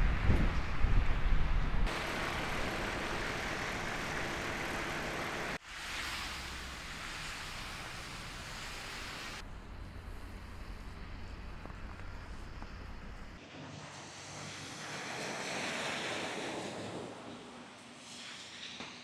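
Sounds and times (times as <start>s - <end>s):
wind buffeting microphone: 0.0s - 4.7s
snowstorm wind: 0.0s - 13.4s.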